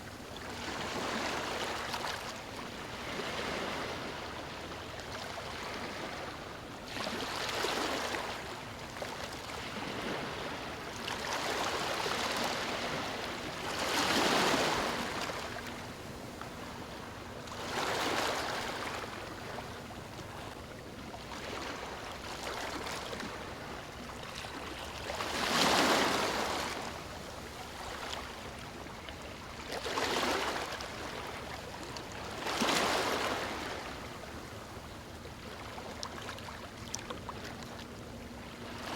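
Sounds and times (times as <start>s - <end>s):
ocean waves breaking: 0.0s - 20.5s, 21.2s - 38.9s.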